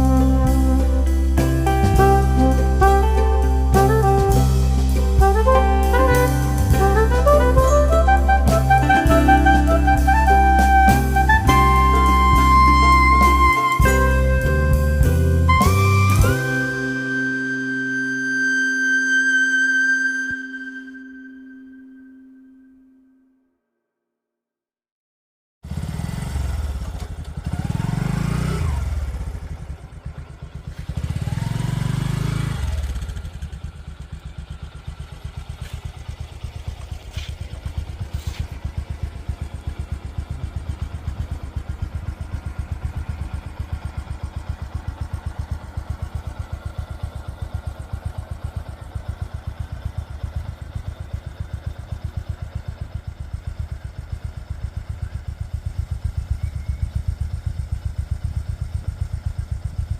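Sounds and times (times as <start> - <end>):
low engine throb: 0.0 - 22.6, 25.7 - 59.9
vehicles passing by: 25.7 - 49.5.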